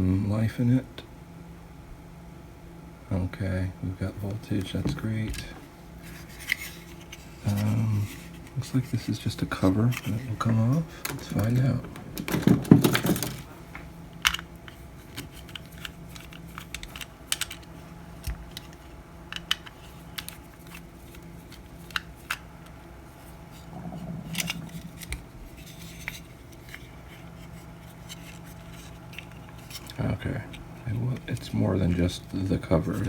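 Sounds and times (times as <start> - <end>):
faint low hum: 0.0 - 33.0
plastic clicks and scrapes: 14.2 - 22.8.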